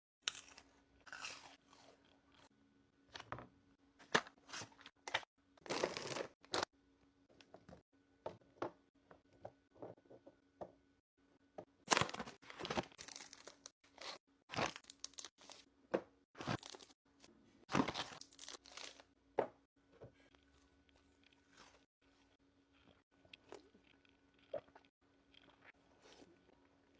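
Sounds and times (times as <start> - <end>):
food packaging crinkling and tearing: 4.6 - 6.7, 11.9 - 15.7, 16.4 - 17.0, 17.7 - 19.0.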